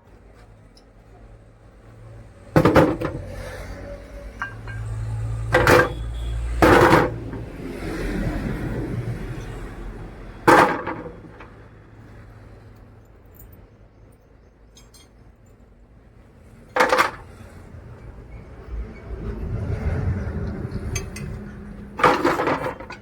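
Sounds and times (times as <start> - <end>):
loud clanks: 2.6 - 3.3, 4.4 - 7.5, 10.5 - 11.6, 16.7 - 17.3, 22.0 - 23.0.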